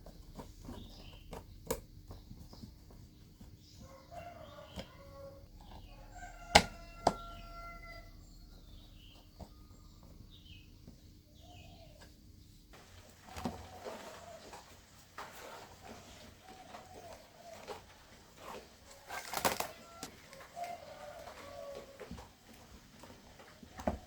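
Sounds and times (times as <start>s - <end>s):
bird calls and chirps: 0.0s - 12.2s.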